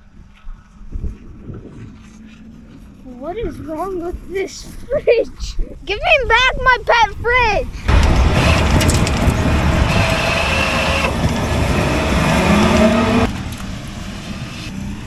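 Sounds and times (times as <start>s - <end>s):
small engine running hard: 7.9s - 15.0s.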